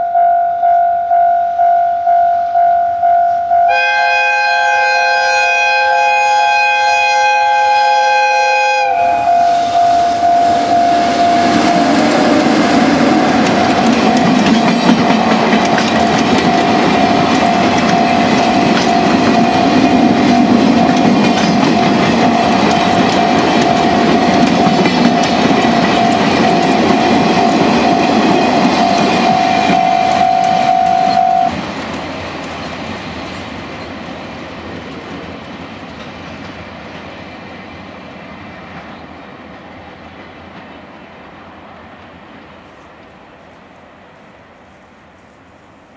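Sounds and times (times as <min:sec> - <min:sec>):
crossing warning signal tone: 0:00.0 - 0:31.6
train rumble: 0:00.0 - 0:45.9
wheels clattering over rail joints: 0:11.5 - 0:30.6.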